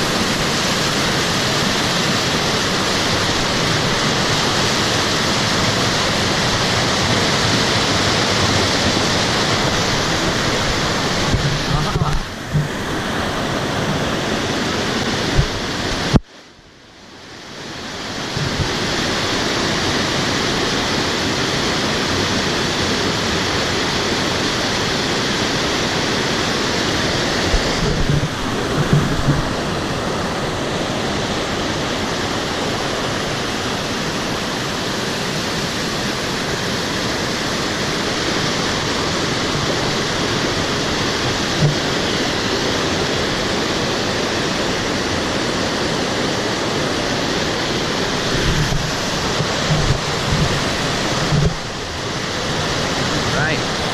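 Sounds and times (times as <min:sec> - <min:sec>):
waterfall roaring: 0:00.0 - 0:53.9
low knocks: 0:27.5 - 0:29.6.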